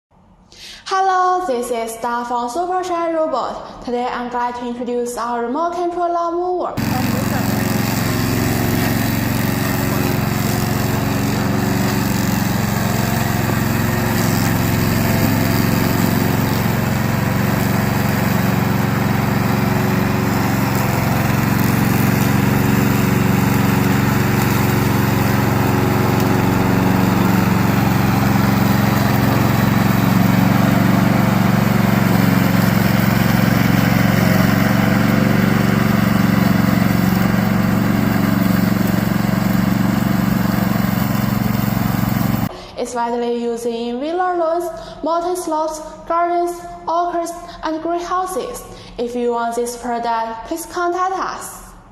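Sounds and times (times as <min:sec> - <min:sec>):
lawn mower engine running: 0:06.8 - 0:42.5.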